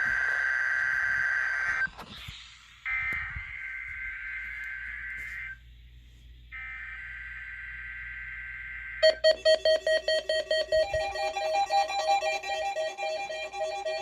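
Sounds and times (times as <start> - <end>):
rapid alarm beeps: 9.0 - 14.0.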